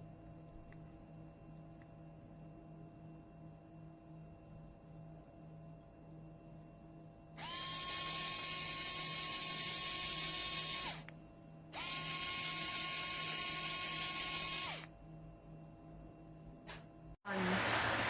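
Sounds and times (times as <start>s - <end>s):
small electric drill whine: 7.4s - 15.0s.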